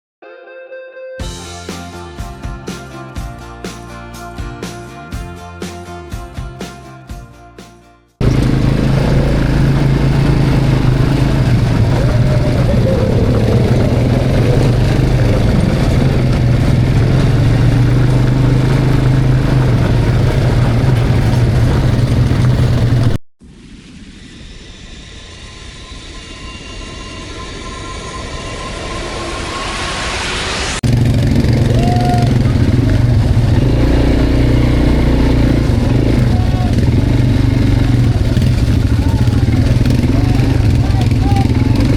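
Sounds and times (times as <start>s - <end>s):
quad bike engines running: 8.2s - 23.2s, 30.8s - 41.9s.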